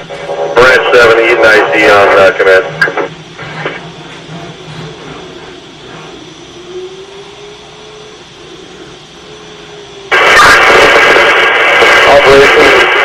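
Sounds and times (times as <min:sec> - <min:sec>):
loud radio static burst: 0:00.0 - 0:03.9, 0:10.1 - 0:13.0
radio hiss: 0:00.0 - 0:06.5, 0:07.8 - 0:13.0
faint wavering tone: 0:04.8 - 0:10.1.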